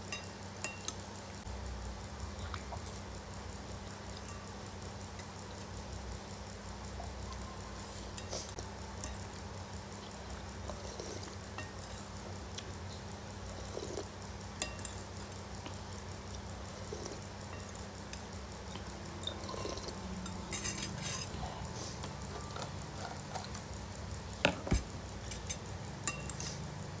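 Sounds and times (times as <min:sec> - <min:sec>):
cutlery scraping a bowl: 0:19.2 - 0:23.6, 0:24.5 - 0:26.6.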